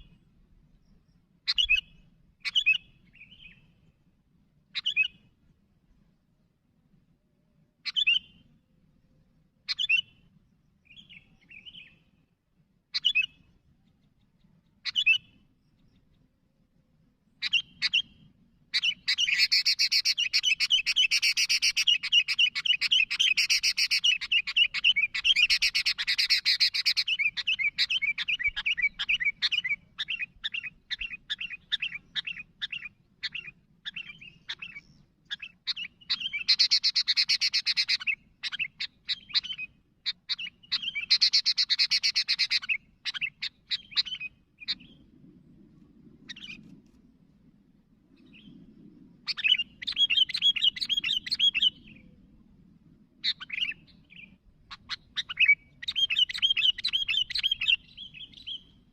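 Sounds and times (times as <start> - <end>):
bird calling and singing: 0.0 - 3.9, 4.7 - 5.3, 7.8 - 8.6, 9.6 - 12.3, 12.9 - 16.3, 17.3 - 45.2, 46.2 - 46.8, 48.1 - 52.3, 53.2 - 58.9.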